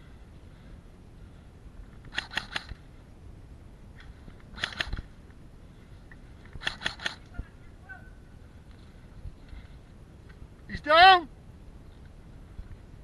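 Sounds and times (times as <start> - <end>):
airsoft rifle bursts: 2.1 - 2.8, 4.6 - 5.1, 6.6 - 7.4.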